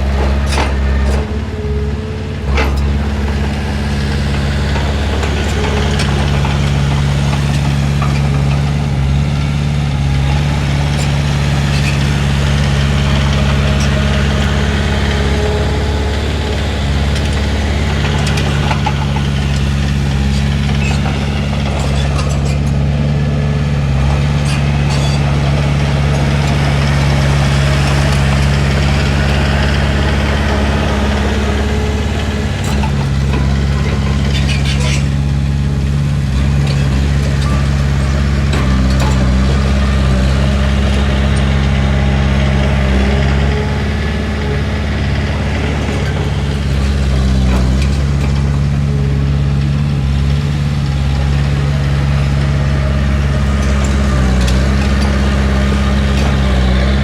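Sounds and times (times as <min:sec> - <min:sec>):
metal clanks and rattles: 0:00.0 - 0:01.4, 0:02.4 - 0:09.2, 0:10.2 - 0:41.5
heavy diesel engine running: 0:00.0 - 0:57.0.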